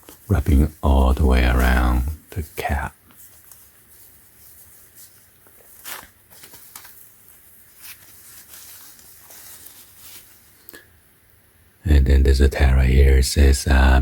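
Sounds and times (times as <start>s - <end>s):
cap rustling in hands: 0.0s - 10.8s.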